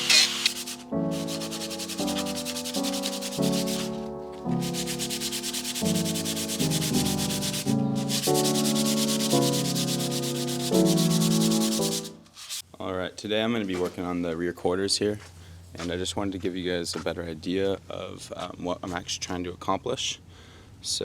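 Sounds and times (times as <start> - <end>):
rasping hiss: 0.0 - 3.9, 4.6 - 12.6.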